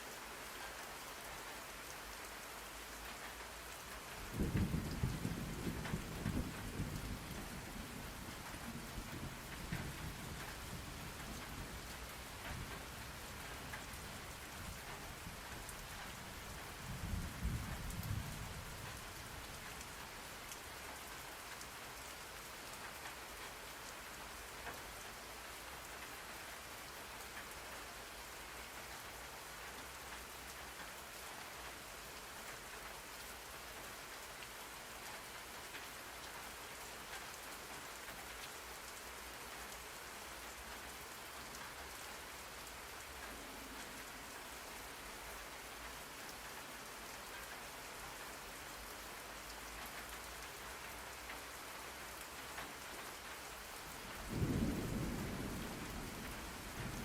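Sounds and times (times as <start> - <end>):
steady rain hiss: 0.0 - 57.0
low rumble of thunder: 4.2 - 20.0, 54.1 - 57.0.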